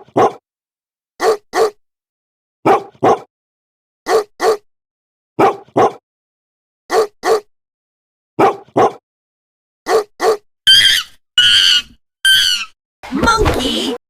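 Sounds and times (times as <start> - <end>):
dog barking: 0.0 - 0.4, 1.2 - 1.8, 2.6 - 3.3, 4.1 - 4.6, 5.4 - 6.0, 6.9 - 7.5, 8.4 - 9.0, 9.9 - 10.4.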